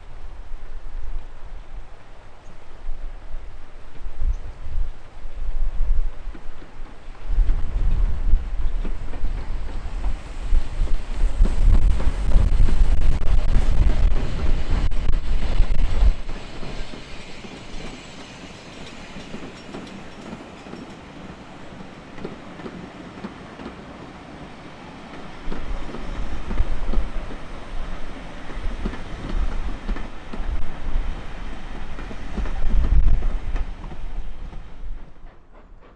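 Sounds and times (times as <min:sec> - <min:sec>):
wind buffeting microphone: 0:02.7 - 0:23.8, 0:25.1 - 0:35.3
train wheels clattering: 0:06.2 - 0:23.8.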